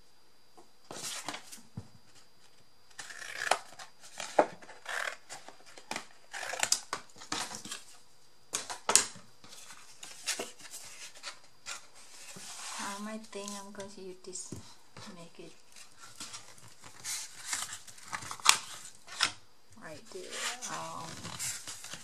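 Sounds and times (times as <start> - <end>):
cardboard rustling: 9.4 - 19.3, 20.0 - 22.0.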